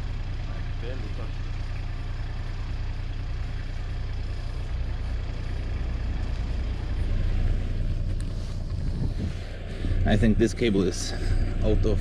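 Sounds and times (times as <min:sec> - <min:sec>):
excavator diesel engine digging: 0:03.4 - 0:12.0.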